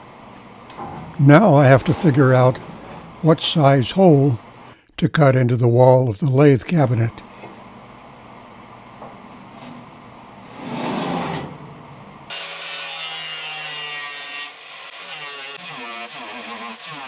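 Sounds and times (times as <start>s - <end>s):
loud rasping burst: 12.3s - 17.0s
power tool cutting: 12.3s - 17.0s.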